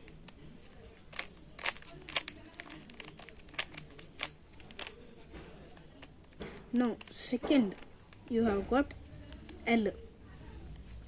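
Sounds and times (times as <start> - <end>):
puzzle cube clicking: 0.0 - 5.1, 5.7 - 8.3.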